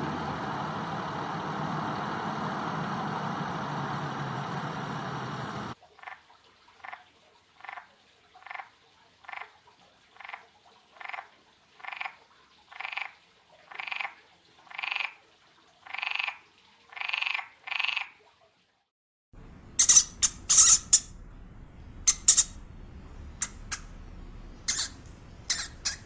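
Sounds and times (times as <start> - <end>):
steady noise: 0.0 - 5.8, 19.4 - 25.9
animal calling: 22.1 - 22.6, 24.6 - 26.0.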